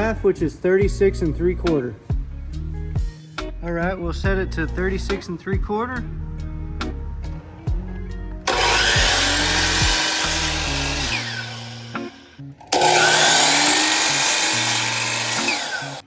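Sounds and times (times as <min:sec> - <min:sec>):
background music: 0:00.0 - 0:16.0
miter saw cutting wood: 0:08.5 - 0:16.0.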